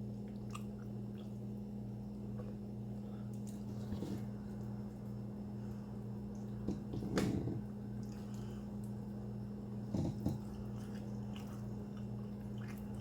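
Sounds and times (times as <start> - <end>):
steady low hum: 0.0 - 13.0
person chewing food: 9.9 - 13.0.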